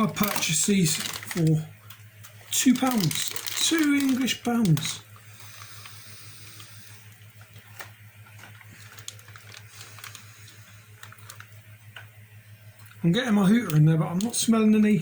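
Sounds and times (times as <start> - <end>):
plastic snack packet rustling: 0.0 - 6.0, 7.4 - 12.0
low steady hum: 0.0 - 15.0.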